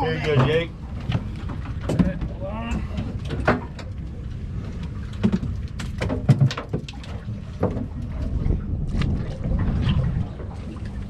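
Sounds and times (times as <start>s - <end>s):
boat engine rumbling: 0.0s - 11.0s
knocks and clatter on deck: 5.2s - 7.0s.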